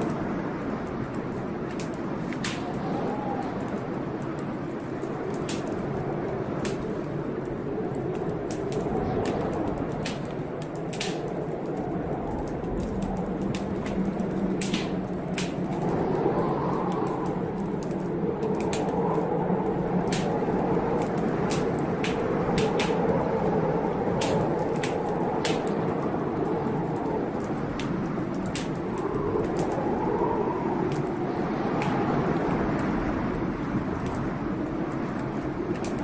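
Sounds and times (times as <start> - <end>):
fireplace fire crackling: 0.0 - 36.0.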